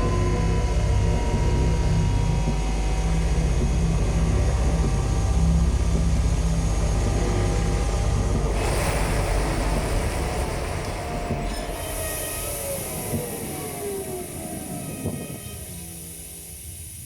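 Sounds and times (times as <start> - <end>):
train rumbling: 0.0 - 17.0
hiss: 8.5 - 17.0.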